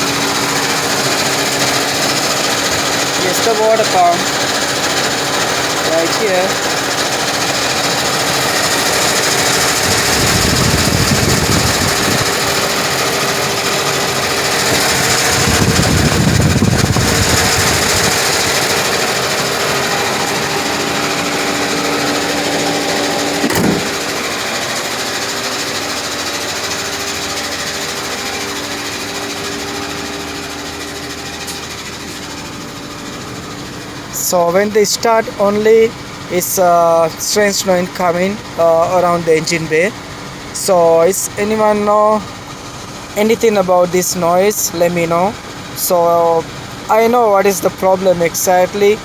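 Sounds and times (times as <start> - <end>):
car engine running: 0.0 - 49.0
mechanical noise from engine: 0.0 - 49.0
sharp click: 23.4 - 24.0.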